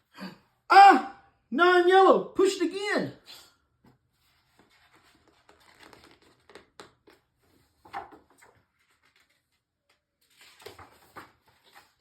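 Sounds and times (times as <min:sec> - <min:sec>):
book page rustling and turning: 0:03.8 - 0:12.0.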